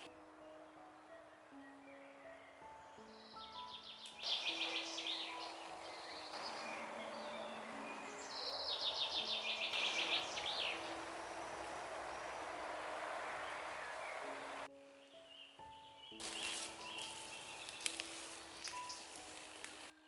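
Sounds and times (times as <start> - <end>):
steady outdoor hiss: 0.0 - 20.0
songbird trilling: 3.3 - 12.5.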